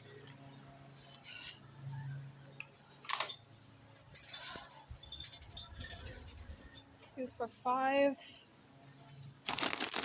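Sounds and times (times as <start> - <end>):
grocery items clinking: 9.5 - 10.0.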